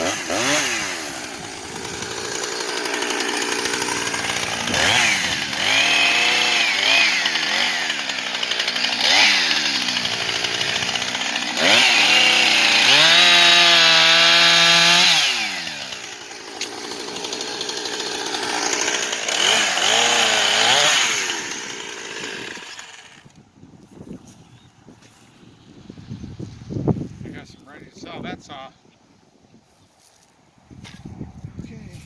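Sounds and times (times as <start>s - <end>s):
chainsaw revving: 0.0s - 23.4s.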